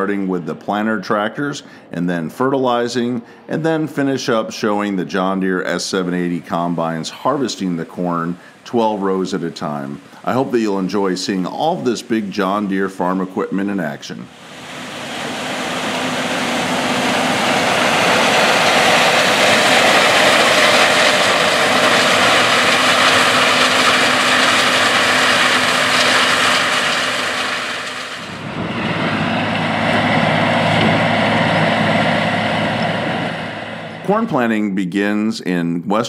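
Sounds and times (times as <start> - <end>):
lower steady machine engine: 6.2 - 10.7, 14.3 - 34.2
farm machinery engine running: 14.3 - 34.3.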